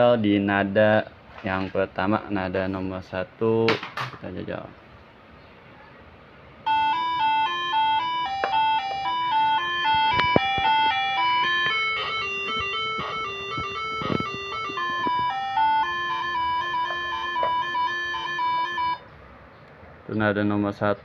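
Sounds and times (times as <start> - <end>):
air horn melody: 6.7 - 19.0.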